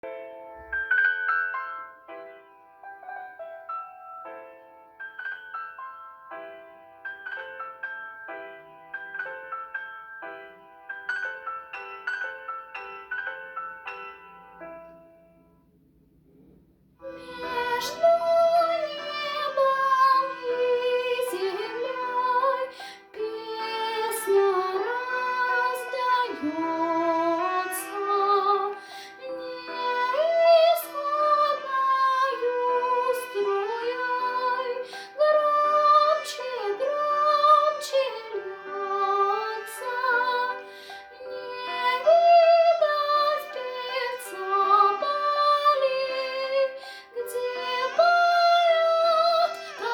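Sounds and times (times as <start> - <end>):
child singing: 17.1 - 40.6, 41.2 - 49.9.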